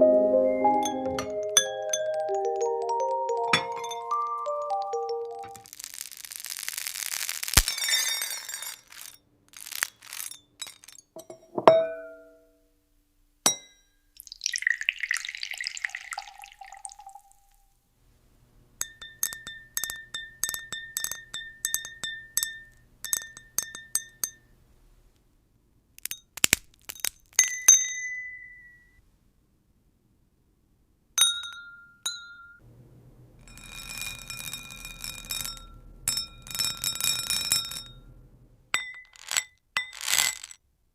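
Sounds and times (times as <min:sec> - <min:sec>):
ringing glass chime: 0:00.0 - 0:05.7, 0:10.6 - 0:12.5, 0:18.8 - 0:24.5, 0:27.4 - 0:29.0, 0:31.2 - 0:32.6, 0:33.4 - 0:38.1
glass clinking: 0:00.6 - 0:05.7, 0:07.6 - 0:12.6, 0:13.5 - 0:17.6, 0:18.8 - 0:24.5, 0:26.9 - 0:29.0, 0:31.2 - 0:32.6, 0:33.4 - 0:38.2, 0:38.8 - 0:40.6
glass tinkling rattle: 0:00.8 - 0:05.7, 0:07.6 - 0:12.4, 0:18.8 - 0:24.5, 0:27.0 - 0:29.0, 0:31.2 - 0:32.6, 0:33.4 - 0:38.1, 0:38.8 - 0:40.6.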